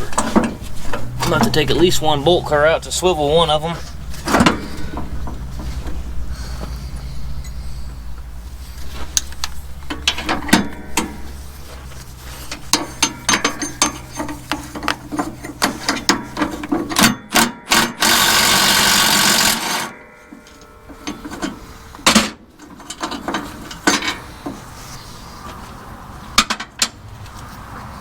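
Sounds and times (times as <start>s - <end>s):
steady low hum: 0.0s - 26.0s
ratchet wrench clicking: 17.7s - 19.9s.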